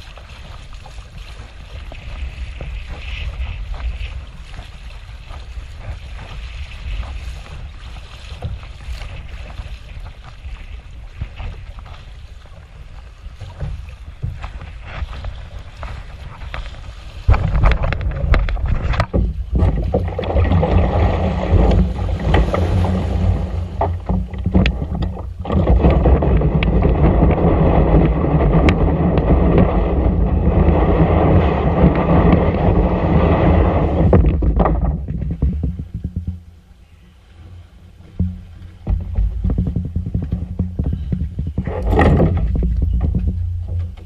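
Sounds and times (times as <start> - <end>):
water splashes: 0.0 - 44.0
wind buffeting microphone: 0.0 - 44.0.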